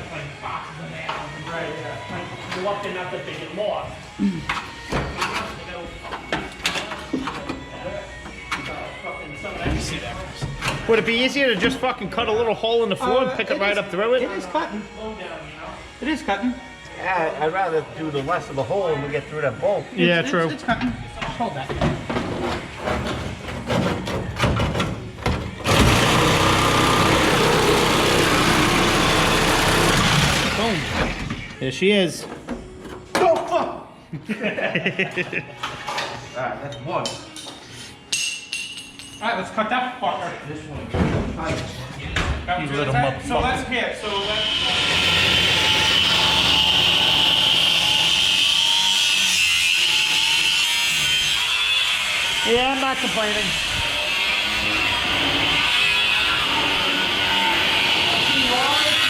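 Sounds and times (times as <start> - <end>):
reciprocating saw cutting metal: 22.2 - 31.3, 44.1 - 59.0.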